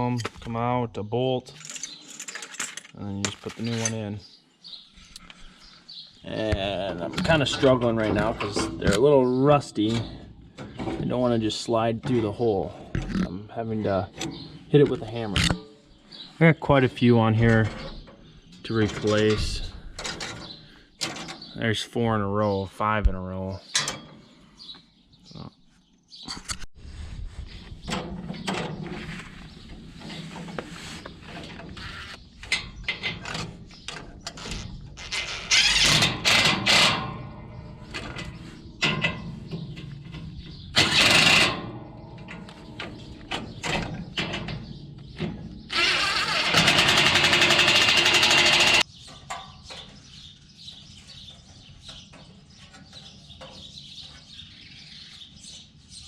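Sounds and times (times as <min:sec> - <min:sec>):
tools clanking against metal: 0:01.4 - 0:04.2, 0:06.8 - 0:11.4, 0:17.5 - 0:21.5, 0:23.6 - 0:24.2, 0:32.4 - 0:34.8, 0:35.8 - 0:45.7, 0:46.5 - 0:50.0
impact wrench bursts: 0:40.8 - 0:41.6, 0:45.7 - 0:48.8.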